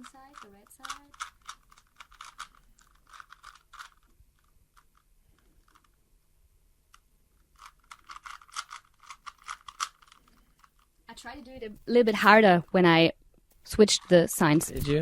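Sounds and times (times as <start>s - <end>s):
puzzle cube clicking and clacking: 0.0s - 6.0s, 6.9s - 12.8s.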